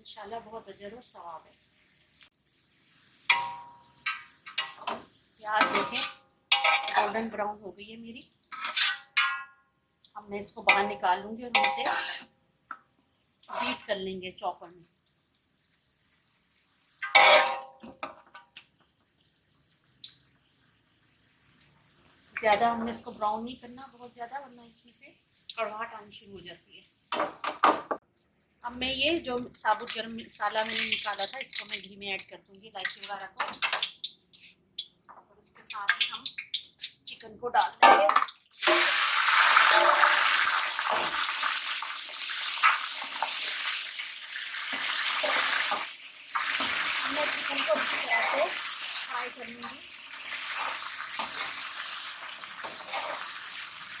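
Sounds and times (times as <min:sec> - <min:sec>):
chicken sizzling in hot fat: 0:00.0 - 0:27.4, 0:28.4 - 0:54.0
metal spoon scraping cooking pot: 0:08.5 - 0:09.3, 0:11.6 - 0:12.3.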